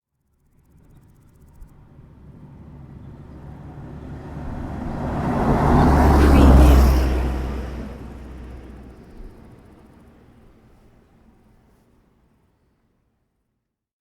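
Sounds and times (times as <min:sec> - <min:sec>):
bus passing: 0:01.8 - 0:11.7.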